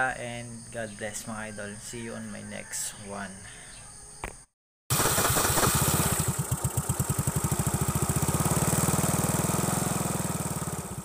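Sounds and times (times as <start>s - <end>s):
scooter engine idling: 4.9s - 11.0s.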